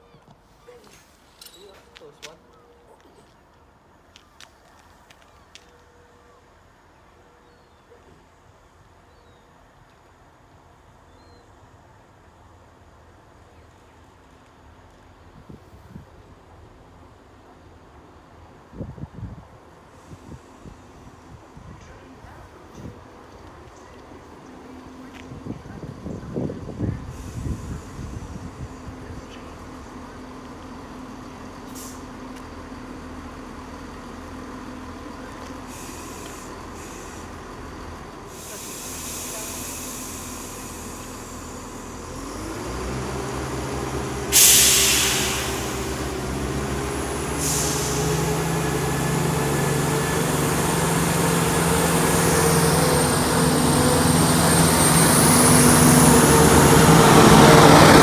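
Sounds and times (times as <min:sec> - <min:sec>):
diesel train engines running up: 0:00.3 - 0:58.0
air-brake hiss: 0:35.6 - 0:37.4, 0:38.3 - 0:58.0.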